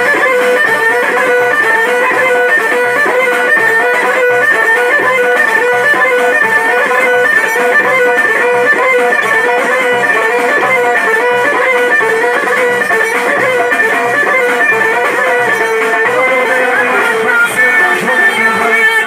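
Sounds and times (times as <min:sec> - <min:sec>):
plucked string melody: 0:00.0 - 0:19.0.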